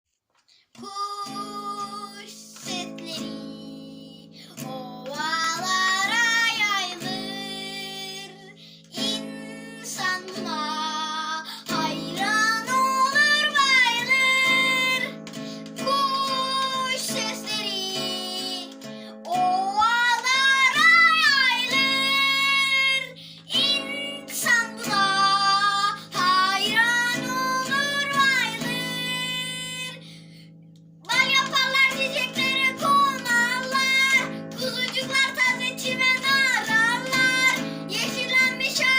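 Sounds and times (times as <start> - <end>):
acoustic guitar: 0.1 - 38.9
child singing: 0.7 - 30.0, 31.0 - 38.9.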